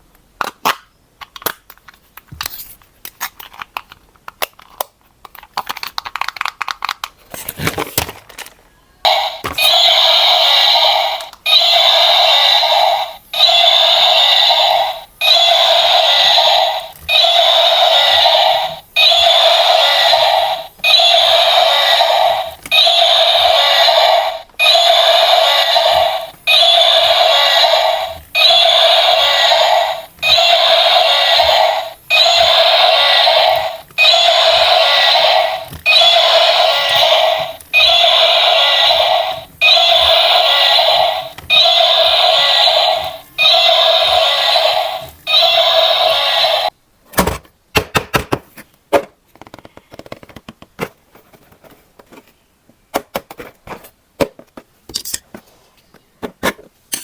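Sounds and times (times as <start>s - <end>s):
toy alarm warbling tone: 9.1s - 46.7s.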